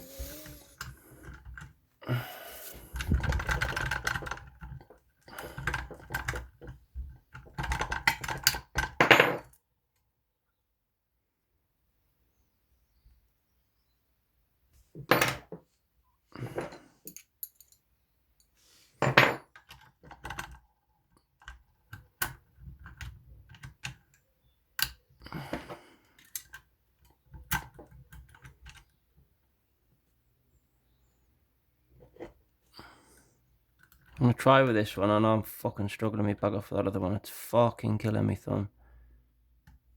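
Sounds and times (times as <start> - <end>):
lock picking tools clicking: 17.0 - 17.8, 26.1 - 28.9.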